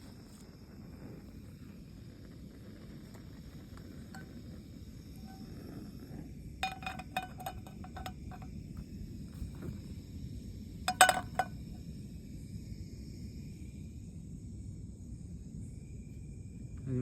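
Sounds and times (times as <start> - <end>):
small hard objects clinking: 6.6 - 8.5, 10.9 - 11.5.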